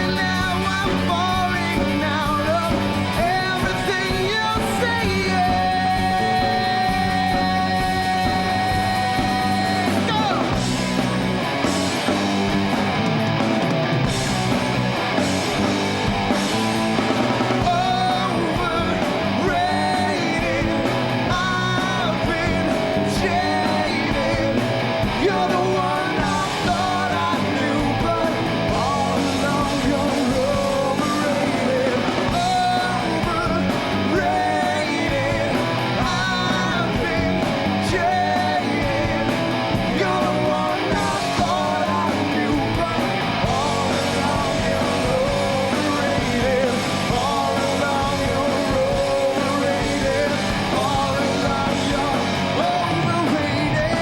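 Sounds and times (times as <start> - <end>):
man singing lead vocals: 0.0 - 11.2, 15.2 - 54.0
rock band playing: 0.0 - 54.0.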